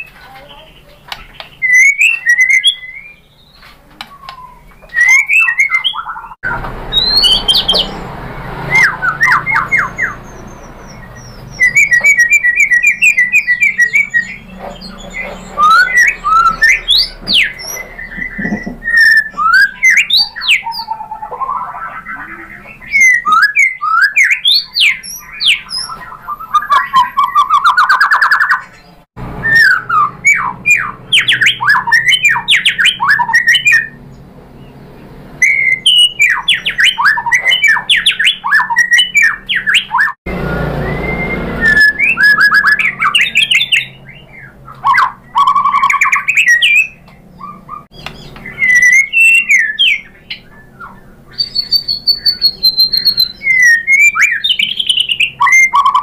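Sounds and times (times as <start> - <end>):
bird singing whistles and trills: 0.0 - 34.0, 35.4 - 56.0.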